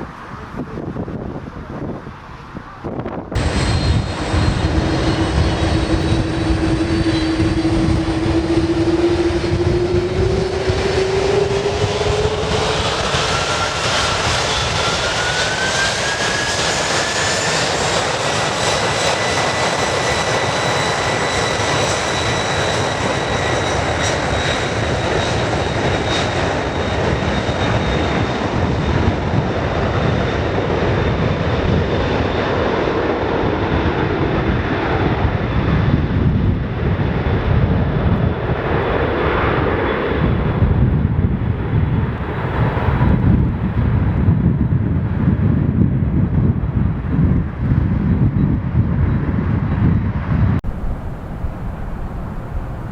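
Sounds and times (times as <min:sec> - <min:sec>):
rushing noise: 0:00.0 - 0:25.8, 0:50.3 - 0:52.9
jet engine whine: 0:00.0 - 0:52.9
low rumble: 0:02.9 - 0:17.9, 0:27.1 - 0:52.9.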